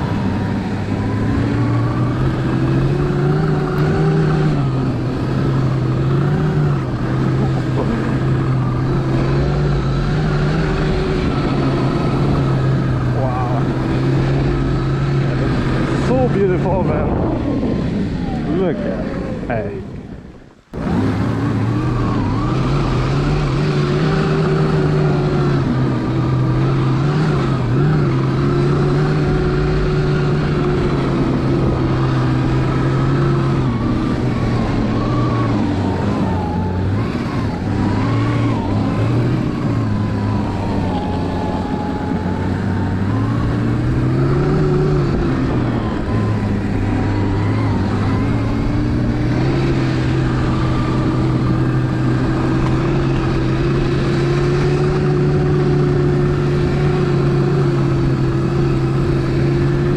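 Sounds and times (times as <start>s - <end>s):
electric snowbike motor whine: 20.8s - 59.9s.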